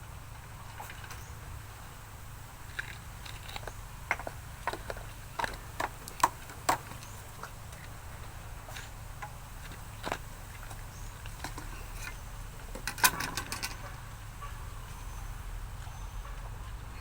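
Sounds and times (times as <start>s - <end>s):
light clicks and knocks: 2.7s - 8.0s, 8.6s - 14.0s.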